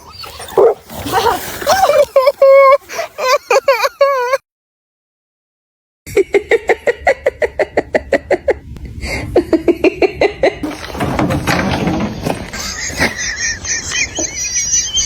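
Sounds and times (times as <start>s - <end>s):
person laughing: 1.7s - 4.4s, 12.6s - 15.0s.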